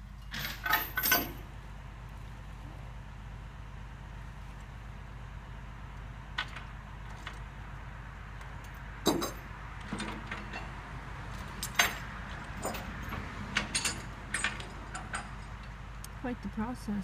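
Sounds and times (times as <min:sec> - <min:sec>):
engine idling low: 0:00.0 - 0:17.0
metallic clanks and rattles: 0:00.2 - 0:01.5, 0:08.4 - 0:15.8.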